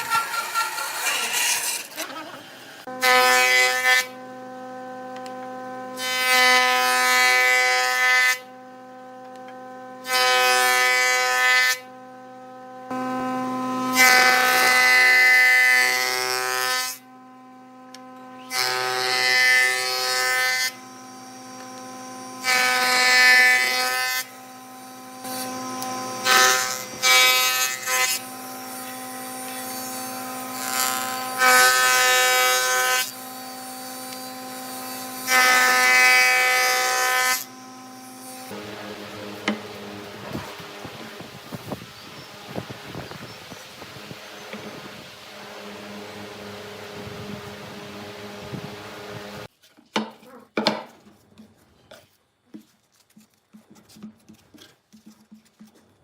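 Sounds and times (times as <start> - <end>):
turning tool cutting spinning wood: 0.0 - 2.9, 20.6 - 49.5
wood lathe motor humming: 0.0 - 2.9, 23.6 - 49.5.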